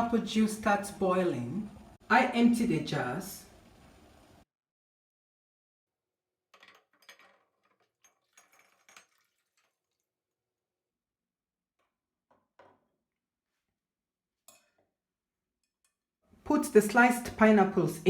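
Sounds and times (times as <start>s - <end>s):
glass jars clinking: 6.6s - 9.8s.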